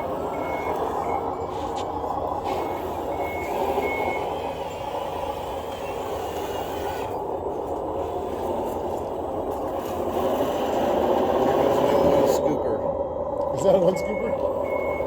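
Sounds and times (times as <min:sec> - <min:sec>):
reversing alarm beeps: 0:00.0 - 0:01.5, 0:02.4 - 0:04.5, 0:13.7 - 0:15.0
steady mechanical noise: 0:00.0 - 0:15.0.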